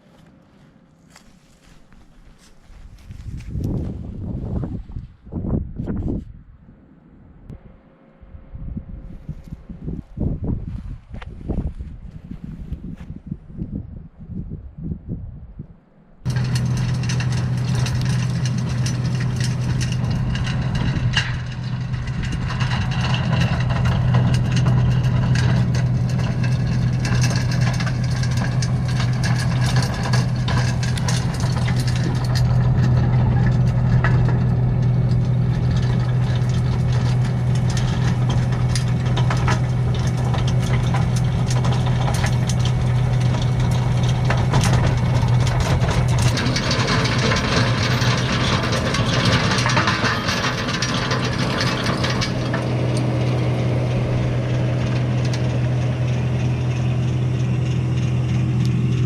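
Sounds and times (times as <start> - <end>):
engine running steadily: 16.2 - 59.0
rotary tiller in hard soil: 16.2 - 59.0
short knocks and clatters: 16.2 - 59.0.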